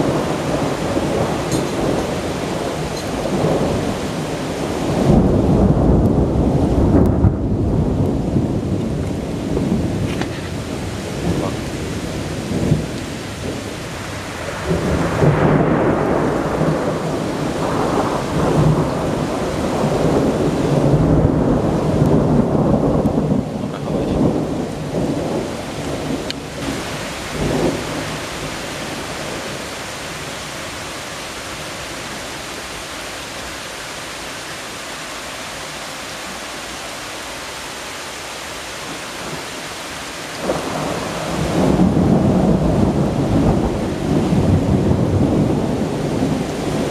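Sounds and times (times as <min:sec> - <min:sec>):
rolling thunder: 0:00.0 - 0:30.9, 0:40.3 - 0:46.9
steady rain: 0:00.0 - 0:46.9.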